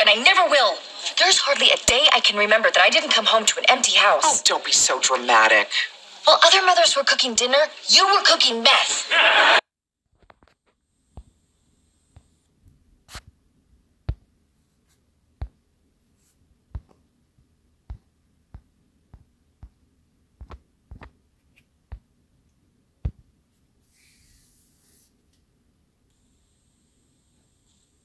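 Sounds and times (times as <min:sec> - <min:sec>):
short soft hiss: 0:23.8 - 0:25.3.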